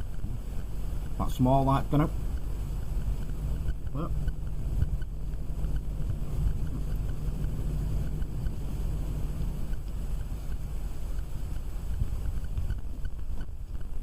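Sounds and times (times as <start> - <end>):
computer cooling fans whirring: 0.0 - 14.0.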